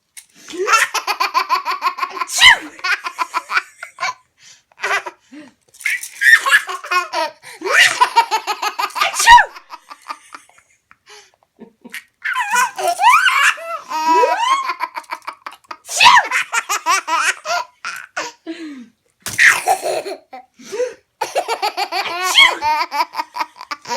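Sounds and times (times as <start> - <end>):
baby laughing: 0.5 - 4.2, 4.8 - 5.2, 5.8 - 10.6, 11.8 - 18.2, 19.3 - 20.5, 21.2 - 23.9.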